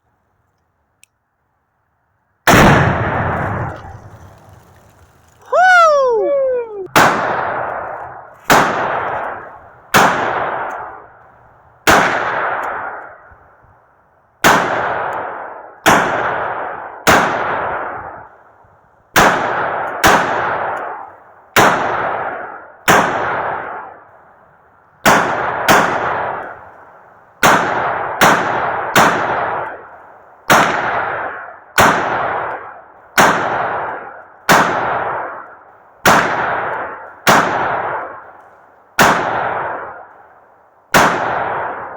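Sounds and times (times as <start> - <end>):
rifle shots with echo: 2.5 - 4.7, 6.9 - 11.2, 11.8 - 13.4, 14.4 - 18.3, 19.1 - 24.1, 25.0 - 26.7, 27.4 - 38.4, 39.0 - 41.9.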